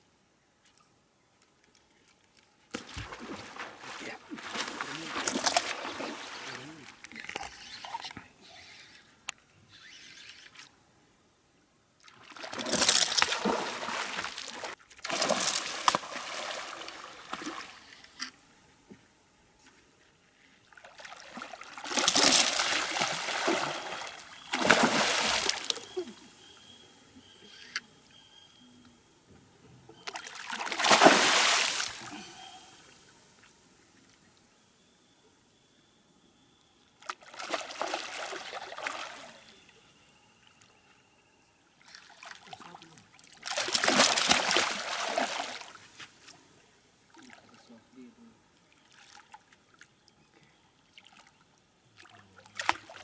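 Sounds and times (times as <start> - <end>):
fish splashing in water: 12.2 - 17.8, 20.9 - 26.0, 30.0 - 32.1, 43.4 - 45.8.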